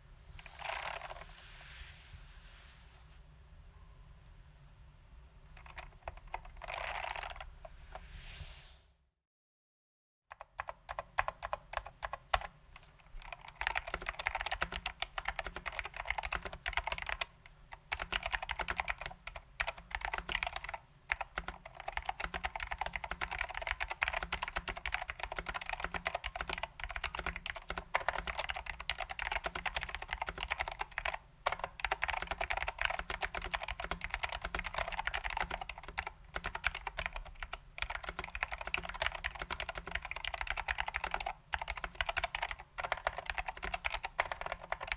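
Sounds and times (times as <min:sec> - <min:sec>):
keyboard typing clicks: 0:13.2 - 0:44.9.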